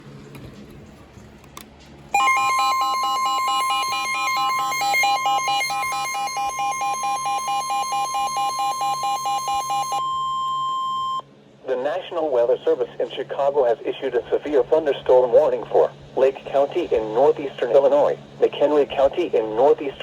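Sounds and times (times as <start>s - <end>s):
steady alarm tone: 2.1s - 11.3s
rapid two-pitch warble: 2.2s - 10.3s.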